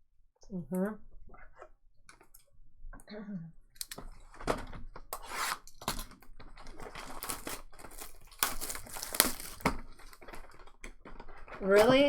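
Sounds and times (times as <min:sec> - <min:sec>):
cards rustling and shuffling: 0:05.1 - 0:12.0.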